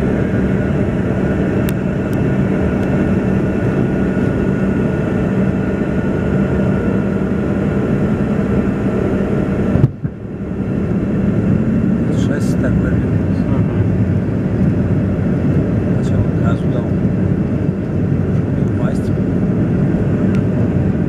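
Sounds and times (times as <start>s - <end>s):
airliner cabin engine rush: 0.0s - 21.0s
steady low hum: 0.0s - 21.0s.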